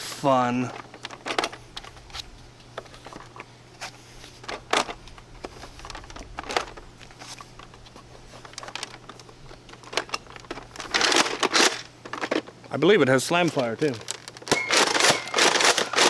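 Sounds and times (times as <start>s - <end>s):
toy blaster plastic clacks: 13.4s - 16.0s.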